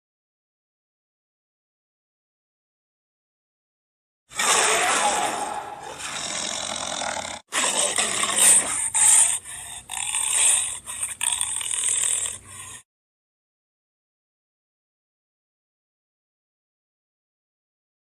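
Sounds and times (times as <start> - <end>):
rasping growling big cat calls: 4.3 - 12.8.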